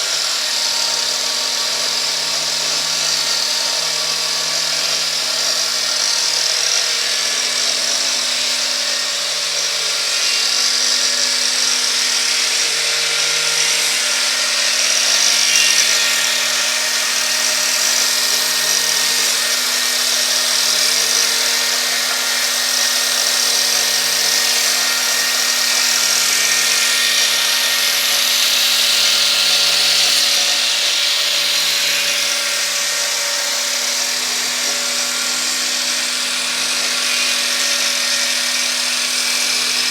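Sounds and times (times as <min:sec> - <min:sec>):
angle grinder whining cutting wood: 0:00.0 - 0:39.9.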